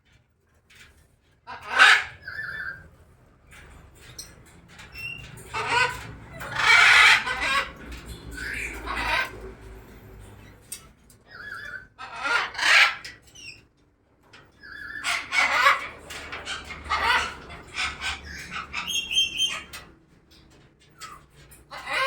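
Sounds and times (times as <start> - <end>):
birds squawking: 1.5 - 2.9, 4.0 - 10.6, 11.2 - 13.7, 14.6 - 20.0, 21.0 - 22.0.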